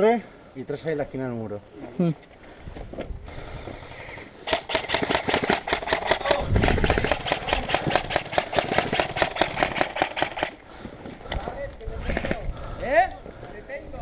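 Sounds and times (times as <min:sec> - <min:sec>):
airsoft gun full-auto firing: 0:04.4 - 0:10.6.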